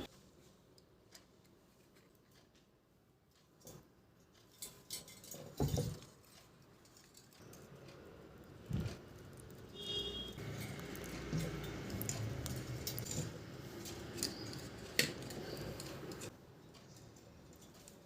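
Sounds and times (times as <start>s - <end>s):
light clicks and rustles: 0.0s - 8.0s, 10.4s - 18.0s.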